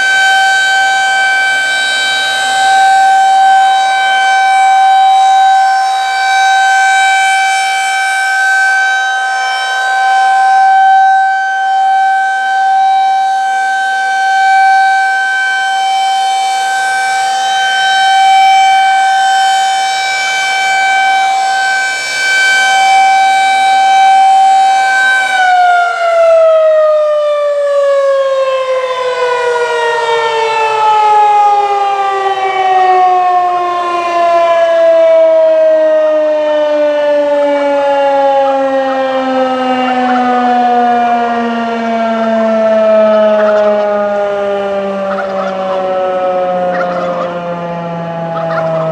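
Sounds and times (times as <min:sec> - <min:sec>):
electromechanical siren tone: 0:00.0 - 0:48.9.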